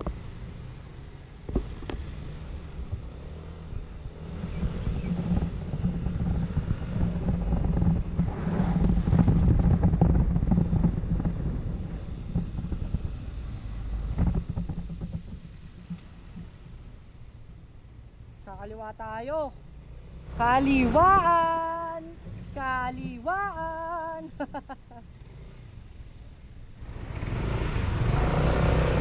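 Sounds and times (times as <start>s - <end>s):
wind on microphone: 1.4s - 16.6s
scooter engine running: 26.8s - 29.0s.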